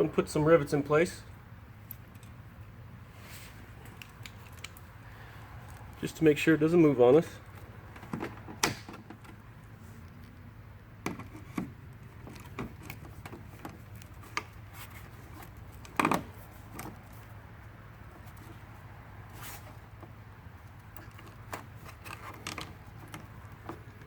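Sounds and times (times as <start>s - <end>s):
rivet snapping: 3.8s - 4.9s, 8.6s - 9.3s.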